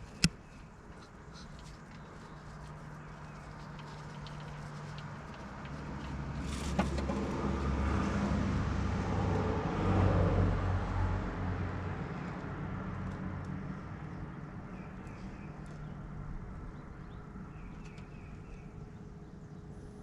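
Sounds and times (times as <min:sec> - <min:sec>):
vehicle engine passing by: 0:03.3 - 0:16.0.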